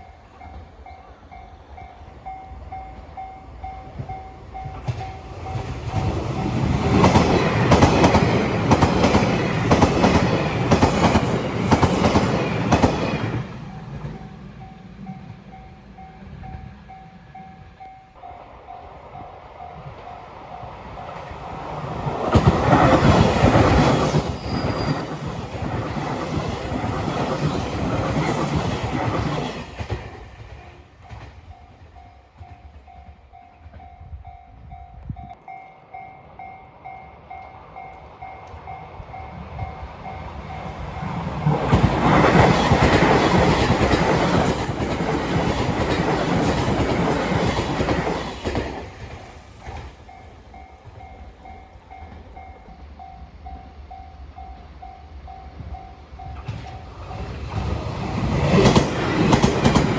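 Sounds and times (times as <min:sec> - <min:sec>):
train wheels clattering over rail joints: 0:04.7 - 0:14.2, 0:21.7 - 0:31.4, 0:41.4 - 0:50.2, 0:56.4 - 0:59.9.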